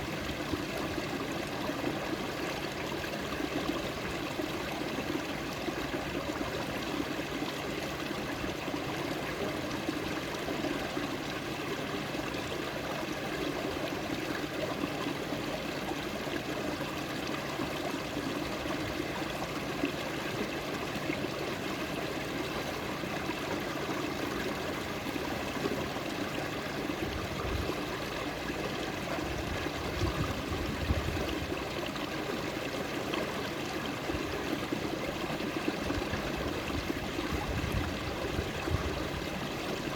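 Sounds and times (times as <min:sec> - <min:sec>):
stream flowing and trickling: 0:00.0 - 0:39.9.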